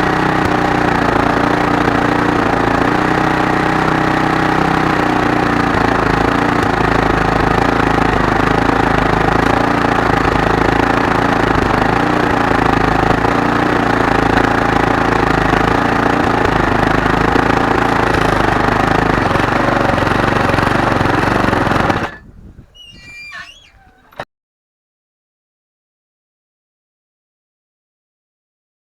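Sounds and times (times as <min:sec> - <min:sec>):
small lawnmower engine running: 0:00.0 - 0:24.2
faint thin squeaks: 0:22.1 - 0:24.2.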